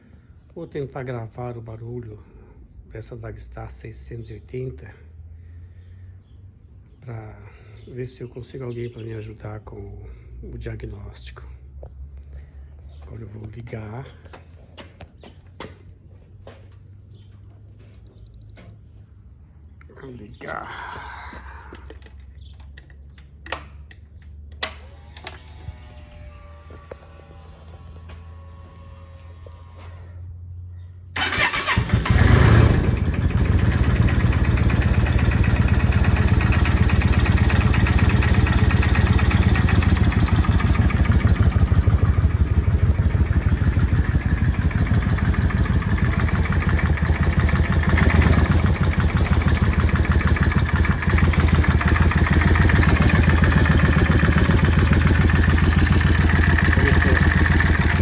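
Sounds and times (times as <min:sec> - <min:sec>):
motorcycle engine starting and idling: 0:31.2 - 0:58.0.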